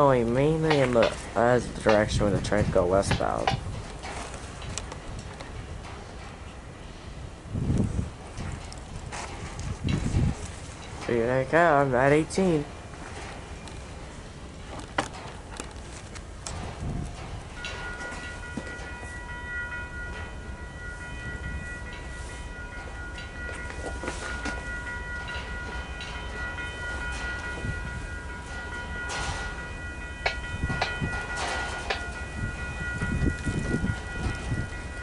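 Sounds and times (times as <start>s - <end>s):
wheels clicking over rails: 0.0s - 6.5s, 12.3s - 20.3s, 21.9s - 35.0s
train rumble: 0.0s - 35.0s.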